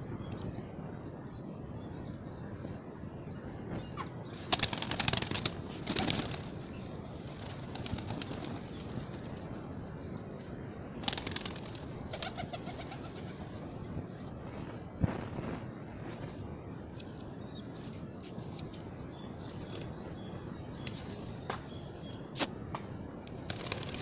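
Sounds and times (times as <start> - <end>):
wings flapping: 4.4 - 9.4, 11.0 - 13.4, 23.4 - 24.0.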